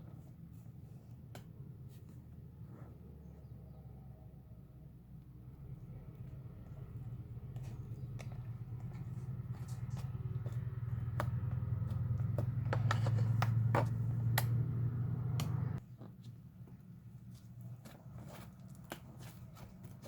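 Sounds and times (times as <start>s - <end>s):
steady low hum: 0.0s - 20.0s.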